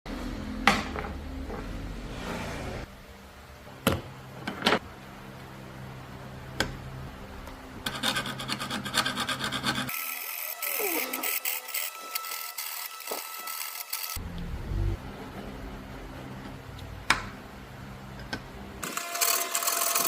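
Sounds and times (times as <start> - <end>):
rasping file strokes: 7.9 - 14.1
low steady hum: 14.2 - 18.8.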